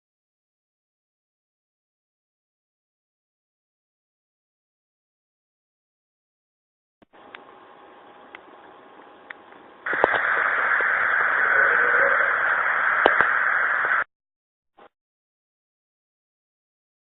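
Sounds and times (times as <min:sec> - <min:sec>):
static-like hiss: 0:07.0 - 0:14.1.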